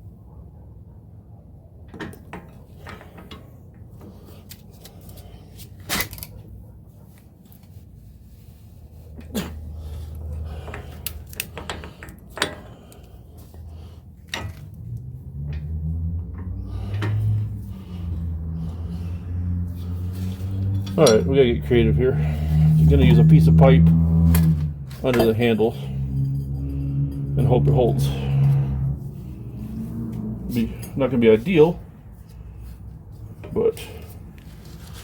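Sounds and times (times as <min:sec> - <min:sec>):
hand tools clanking on metal: 0:14.2 - 0:15.8, 0:19.8 - 0:21.5, 0:24.4 - 0:28.6.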